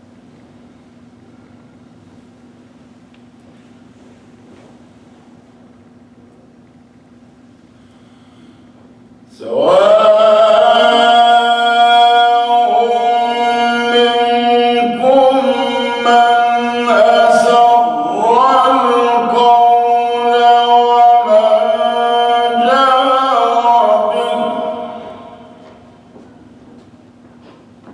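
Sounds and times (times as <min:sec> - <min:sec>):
faint steady hum: 0:00.0 - 0:27.9
man chanting melodic recitation: 0:09.4 - 0:25.7.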